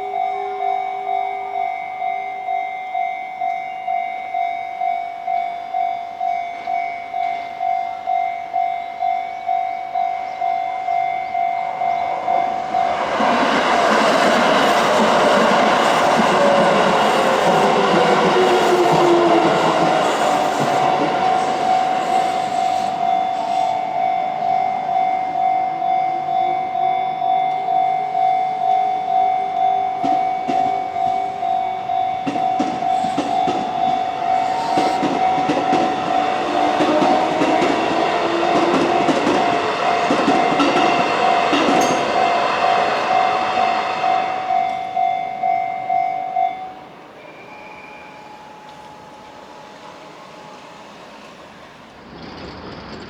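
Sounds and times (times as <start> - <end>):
crossing warning bell ringing: 0.0 - 51.9
train wheels clattering on rails: 11.8 - 25.4, 29.2 - 46.0.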